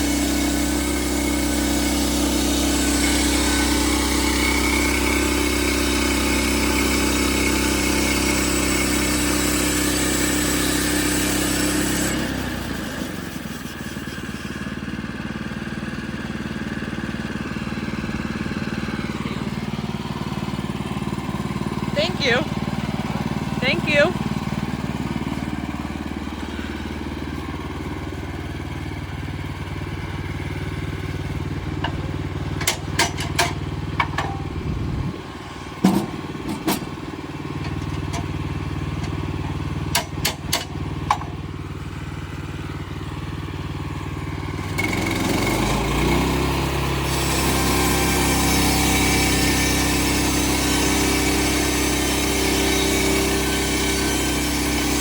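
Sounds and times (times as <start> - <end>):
band blade sawing log: 0.0 - 14.7, 44.6 - 55.0
sawmill engine running: 0.0 - 55.0.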